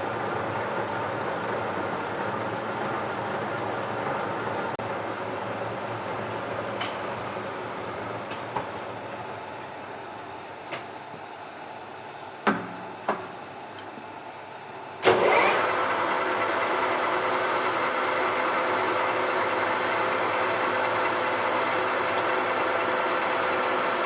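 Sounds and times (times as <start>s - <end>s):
lathe spindle humming: 13.5s - 24.0s.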